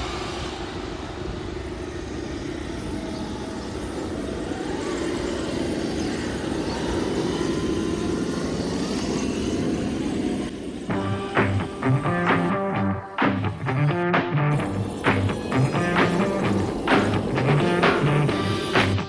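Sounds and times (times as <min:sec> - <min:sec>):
electric motor whining and grinding: 0:05.0 - 0:19.0.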